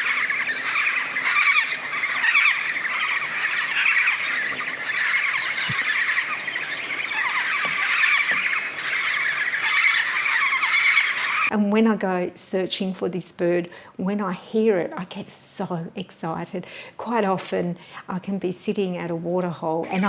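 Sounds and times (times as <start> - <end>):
flock of cockatoos calling: 0.0 - 11.5.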